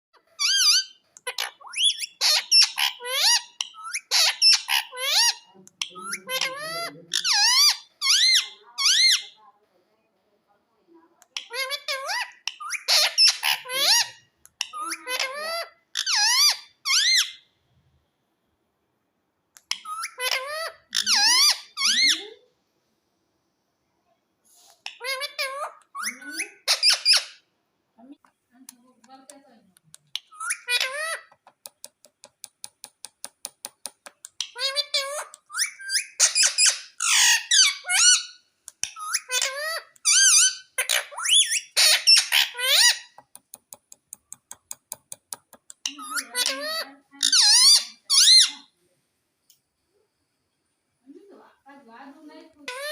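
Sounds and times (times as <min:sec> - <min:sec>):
parrot shrill calls: 0:00.4 - 0:09.4, 0:11.4 - 0:17.5, 0:19.7 - 0:22.4, 0:24.9 - 0:27.4, 0:30.2 - 0:31.4, 0:34.4 - 0:43.2, 0:45.8 - 0:48.7.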